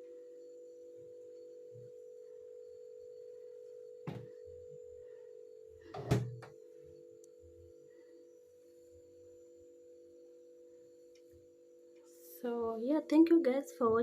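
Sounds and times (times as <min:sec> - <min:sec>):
electrical hum: 0:00.0 - 0:14.0
loud knock: 0:04.1 - 0:04.3.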